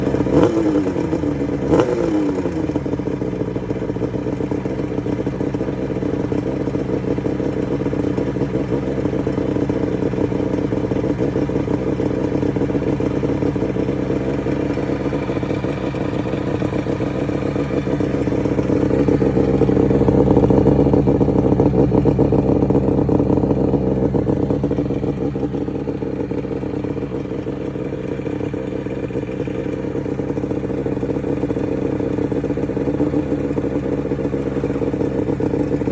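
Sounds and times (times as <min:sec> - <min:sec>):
two-stroke engine idling: 0:00.0 - 0:35.9.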